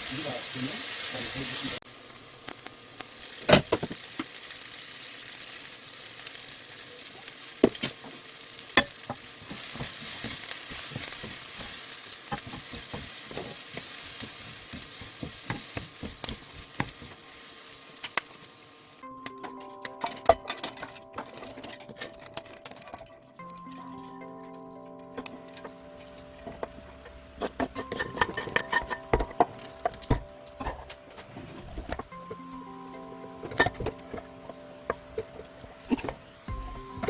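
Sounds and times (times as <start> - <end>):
food sizzling in a frying pan: 0.0 - 22.8, 27.4 - 30.8
utensil scraping a pan: 27.4 - 32.1.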